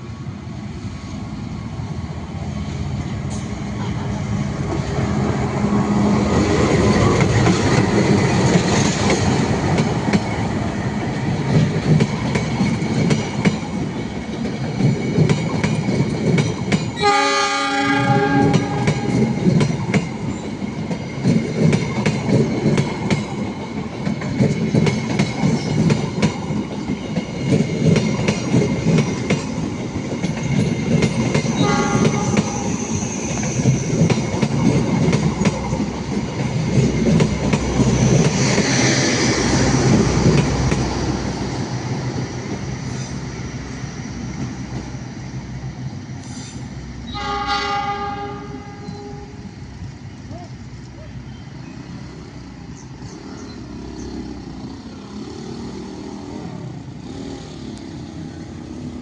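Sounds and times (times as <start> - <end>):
train wheels clattering over rails: 3.2 - 17.2, 18.0 - 45.0
train horn: 17.0 - 19.4, 31.6 - 32.9, 47.1 - 49.4.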